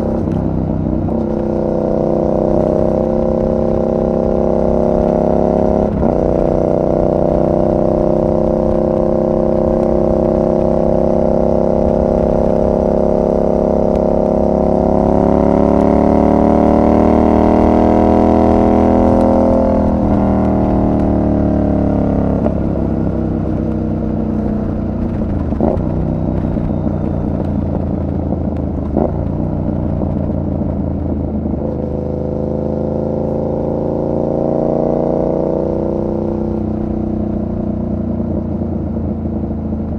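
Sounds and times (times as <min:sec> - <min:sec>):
motorcycle engine running: 0:00.0 - 0:39.9
engine knocks: 0:22.4 - 0:32.0.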